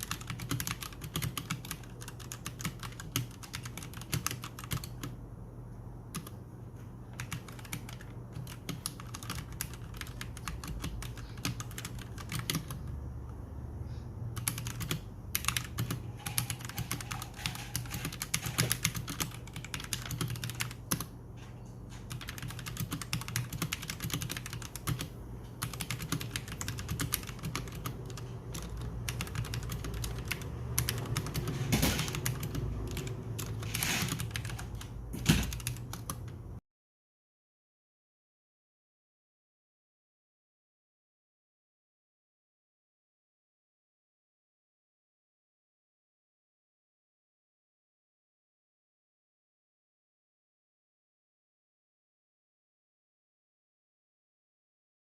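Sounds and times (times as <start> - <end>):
mechanical keyboard typing: 0.0 - 5.2, 6.1 - 6.4, 7.1 - 13.0, 14.4 - 21.2, 21.9 - 36.5.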